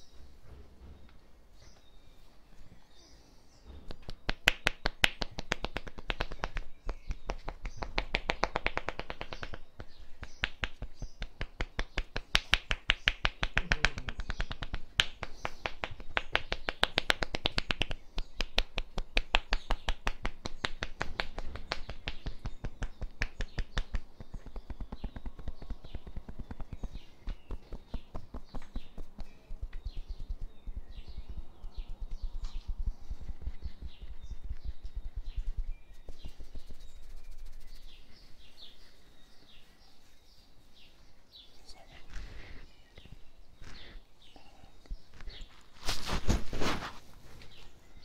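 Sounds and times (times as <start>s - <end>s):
hands slapping on body: 3.8s - 38.1s.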